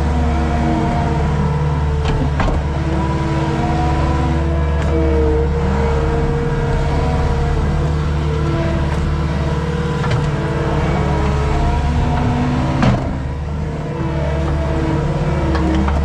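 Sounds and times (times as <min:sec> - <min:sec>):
diesel engine running: 0:00.0 - 0:16.0.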